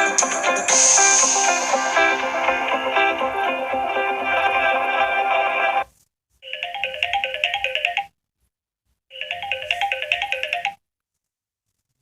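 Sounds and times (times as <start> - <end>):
phone ringtone: 6.4 - 8.2, 9.1 - 10.8.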